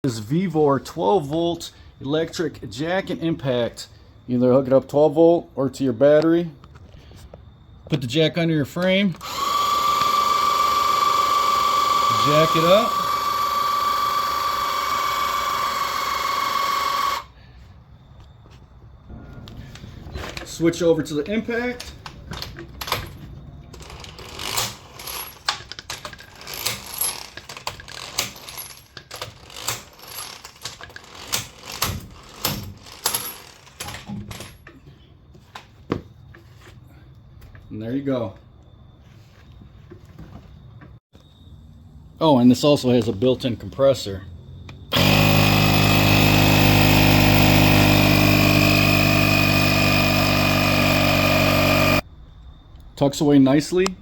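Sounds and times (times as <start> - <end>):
air compressor running: 9.2 - 17.4, 44.9 - 52.0
tools and metal parts clattering: 19.4 - 36.8.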